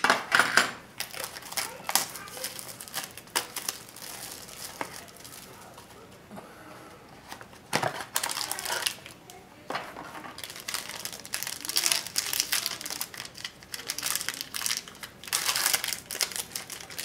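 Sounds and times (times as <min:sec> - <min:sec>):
plastic wrapping crinkling and tearing: 0:01.0 - 0:06.0, 0:07.8 - 0:09.4, 0:10.2 - 0:17.0.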